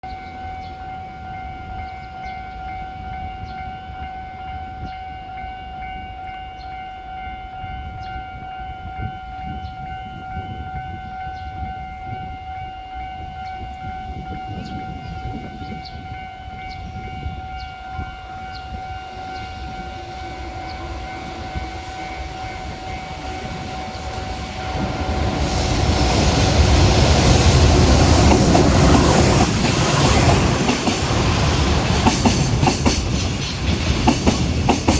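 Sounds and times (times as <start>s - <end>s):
freight train rumble: 0.0s - 34.9s
level-crossing warning tone: 0.0s - 34.9s.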